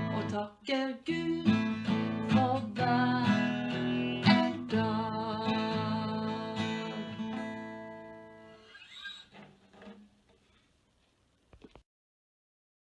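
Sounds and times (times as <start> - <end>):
acoustic guitar strumming: 0.0 - 10.2.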